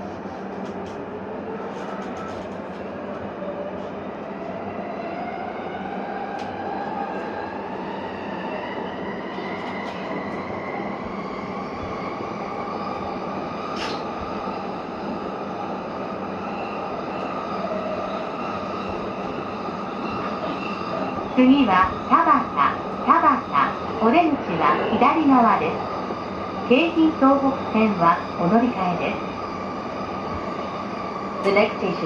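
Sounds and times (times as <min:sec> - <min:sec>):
click: 0:06.4 - 0:06.6.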